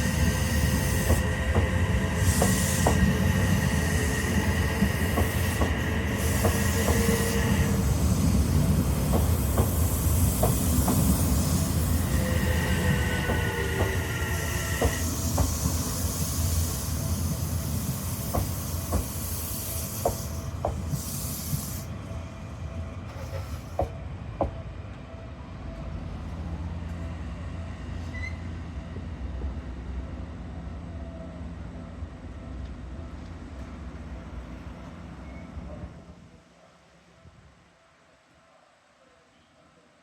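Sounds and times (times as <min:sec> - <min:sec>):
train hiss: 0:00.0 - 0:24.5
low hum of standing train: 0:00.0 - 0:40.0
train wheel clicks over rail joints: 0:09.0 - 0:11.2, 0:13.0 - 0:15.8, 0:18.1 - 0:21.7.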